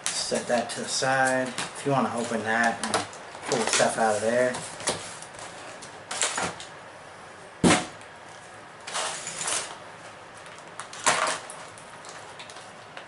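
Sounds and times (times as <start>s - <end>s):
packaging rustling: 0.1s - 6.7s, 10.4s - 13.0s.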